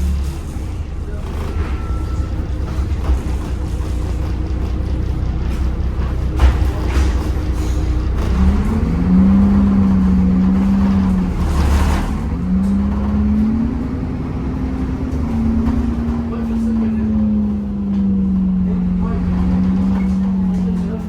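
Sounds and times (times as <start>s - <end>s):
bus diesel engine rumble: 0.0s - 21.0s
loud gearbox whine: 0.0s - 21.0s.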